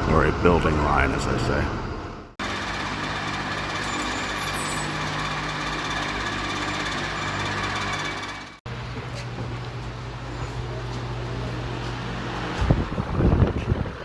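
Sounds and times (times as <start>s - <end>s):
heavy machinery running: 0.0s - 8.6s.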